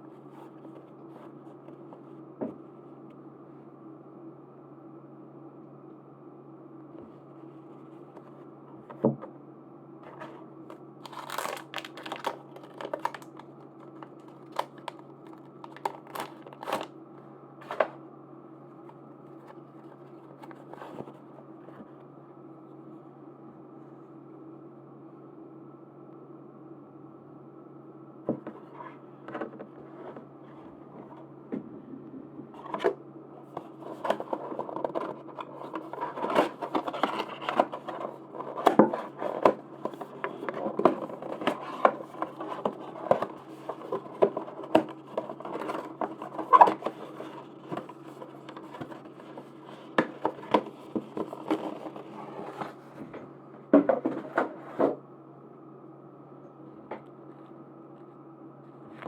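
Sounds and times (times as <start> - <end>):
steady low hum: 0.0 - 59.0
packaging crinkling and rustling: 11.0 - 17.0, 33.4 - 52.9.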